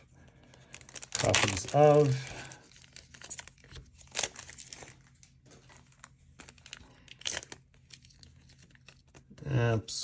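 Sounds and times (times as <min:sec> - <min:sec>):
foil wrapper crinkling and tearing: 0:00.4 - 0:09.4.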